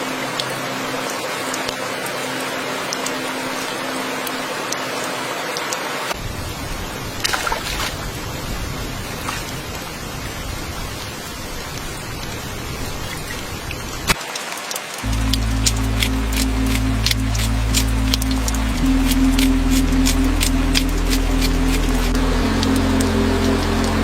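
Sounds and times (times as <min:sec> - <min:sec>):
deeper rain noise: 0:00.0 - 0:24.0
rain hissing: 0:07.9 - 0:24.0
drip ticks: 0:14.1 - 0:24.0.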